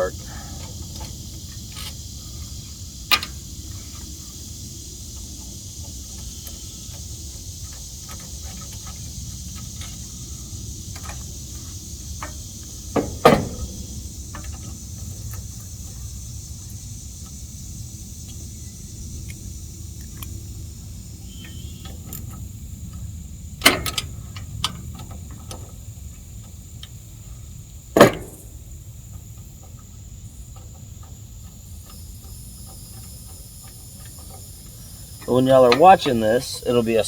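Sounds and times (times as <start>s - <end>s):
steady high hiss: 0.0s - 37.0s
hand tools clicking and knocking: 10.9s - 15.4s, 31.4s - 37.0s.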